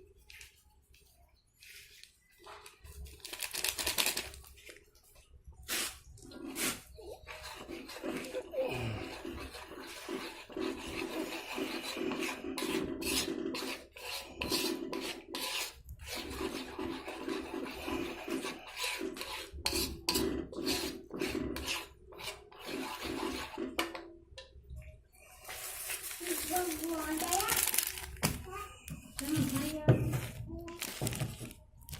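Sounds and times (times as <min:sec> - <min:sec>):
utensil scraping a pot: 0:05.7 - 0:24.1.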